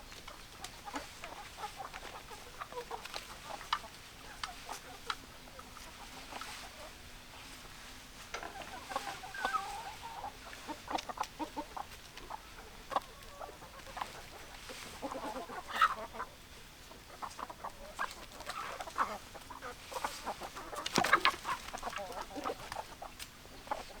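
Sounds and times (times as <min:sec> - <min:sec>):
chickens clucking: 0:00.0 - 0:24.0
chicken squawks: 0:08.5 - 0:16.4, 0:17.1 - 0:23.1.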